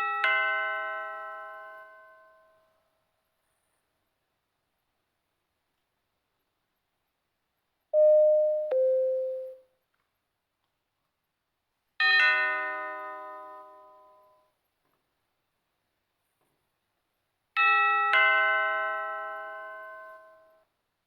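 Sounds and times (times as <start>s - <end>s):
bright single chime: 8.0s - 9.6s
doorbell ding-dong: 8.0s - 9.6s.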